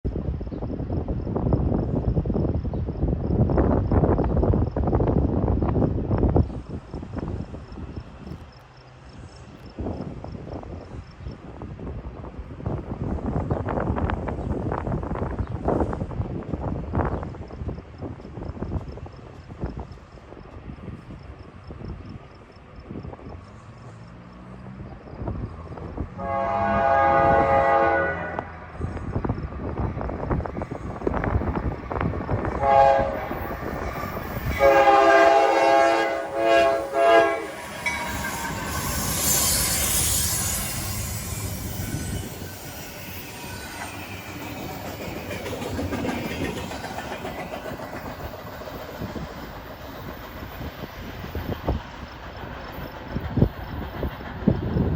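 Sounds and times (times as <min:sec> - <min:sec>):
locomotive horn blasts: 0:26.2 - 0:28.6, 0:32.5 - 0:33.4, 0:34.5 - 0:38.1
train wheels clacking over rail joints: 0:36.5 - 0:54.9
high wheel squeal: 0:36.8 - 0:46.3.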